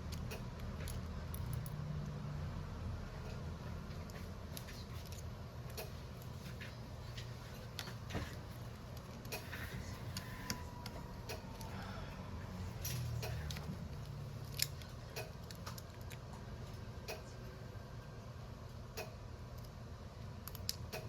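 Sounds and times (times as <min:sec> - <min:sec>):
small tool clicks and ticks: 0:00.0 - 0:01.7, 0:12.8 - 0:16.2, 0:18.9 - 0:19.8, 0:20.4 - 0:21.0
low steady hum: 0:00.0 - 0:21.0.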